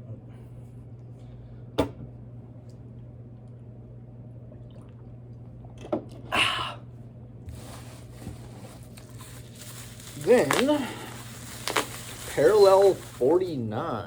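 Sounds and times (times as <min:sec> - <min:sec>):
steady low hum: 0:00.0 - 0:14.0
packaging rustling: 0:07.5 - 0:14.0.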